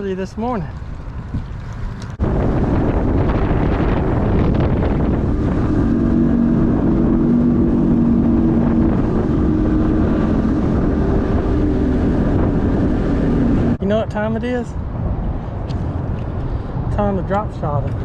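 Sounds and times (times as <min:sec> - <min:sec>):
wind buffeting microphone: 0:00.0 - 0:18.0
outboard motor running: 0:02.3 - 0:13.8.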